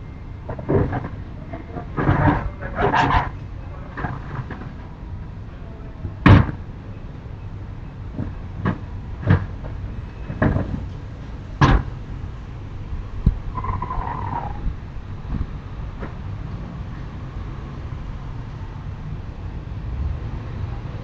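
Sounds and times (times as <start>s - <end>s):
banging on a house: 6.2s - 6.7s, 11.6s - 12.1s.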